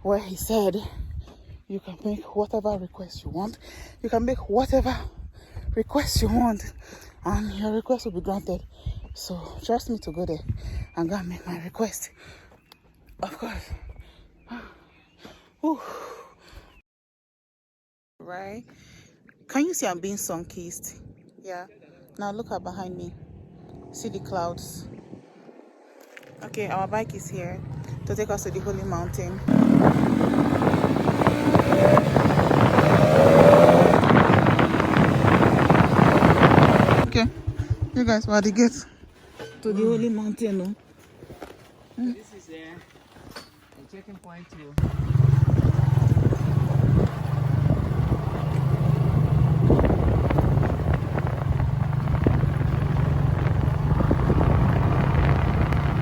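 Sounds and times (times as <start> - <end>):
wind buffeting microphone: 0.0 - 11.4, 22.4 - 25.8, 26.4 - 38.7, 44.8 - 56.0
motorcycle engine running: 27.0 - 38.8, 44.8 - 56.0.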